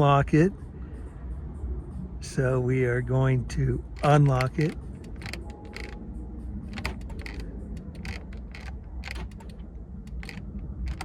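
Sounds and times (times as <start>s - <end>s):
key fob button clicks: 4.0s - 6.0s, 6.7s - 11.0s.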